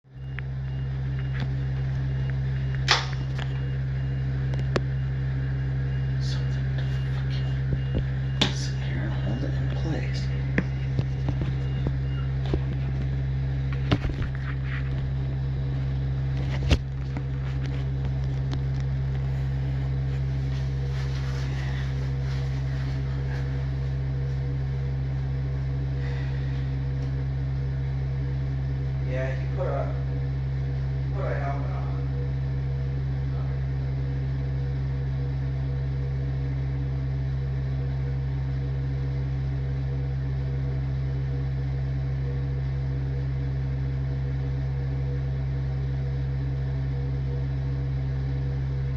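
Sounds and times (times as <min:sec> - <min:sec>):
low engine drone: 0:00.0 - 0:48.9
sharp click: 0:02.8 - 0:03.5.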